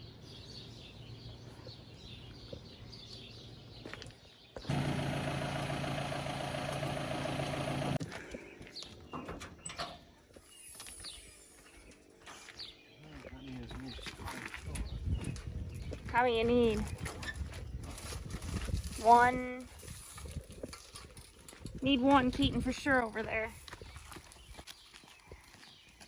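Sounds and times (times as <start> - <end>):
engine running: 4.7 - 8.0.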